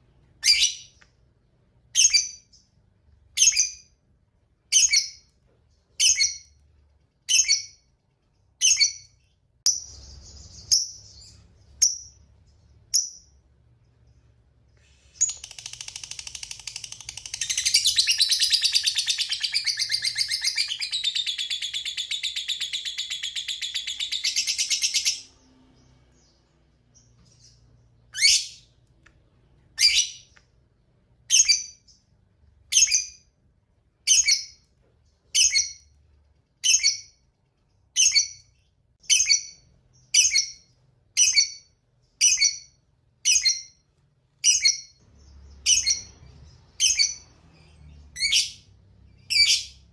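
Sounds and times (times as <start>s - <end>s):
lovebird chattering trill: 15.2s - 25.2s.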